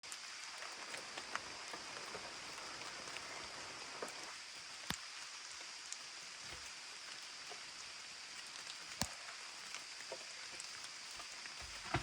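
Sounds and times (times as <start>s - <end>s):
raindrops ticking close by: 0.0s - 12.0s
steady rain in forest: 0.0s - 12.0s.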